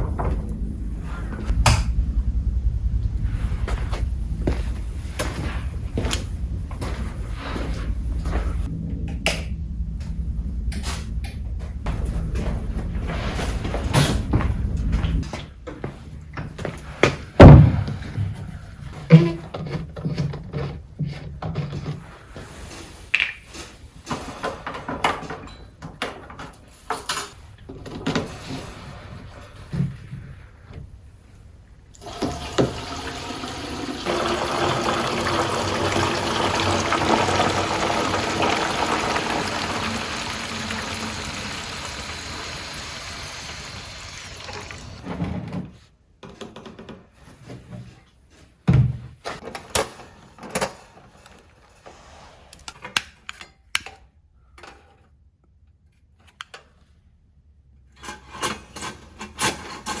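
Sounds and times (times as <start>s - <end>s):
long rushing noise: 0.8s - 15.2s.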